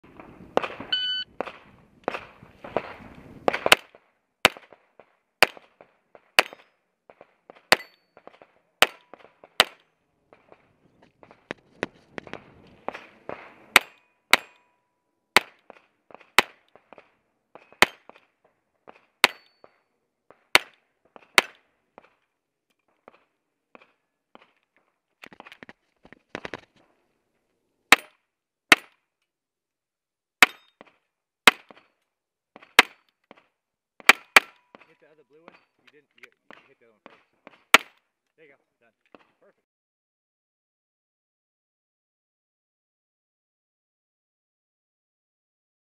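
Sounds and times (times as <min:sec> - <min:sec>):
pistol shots: 0:00.6 - 0:10.6, 0:15.4 - 0:18.2, 0:20.3 - 0:21.7, 0:31.5 - 0:31.8.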